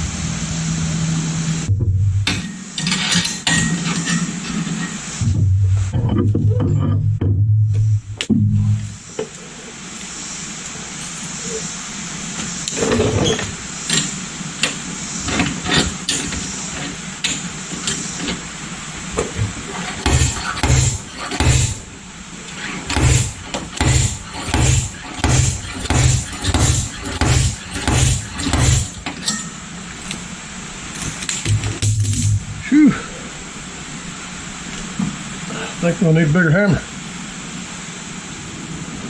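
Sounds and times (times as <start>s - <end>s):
dent puller buzzing pulses: 19.8s - 22.0s, 22.9s - 29.3s.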